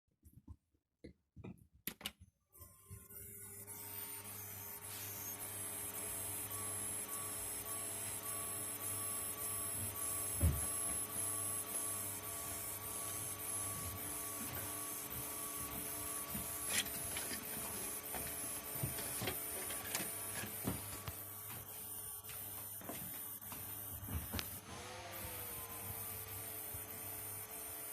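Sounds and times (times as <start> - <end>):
computer fans humming: 3.4 - 27.9.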